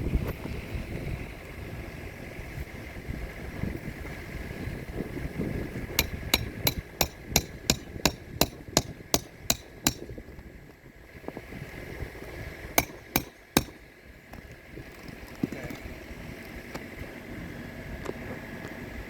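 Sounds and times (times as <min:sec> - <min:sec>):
hammer driving roofing nails: 0:06.0 - 0:10.2, 0:12.8 - 0:13.8.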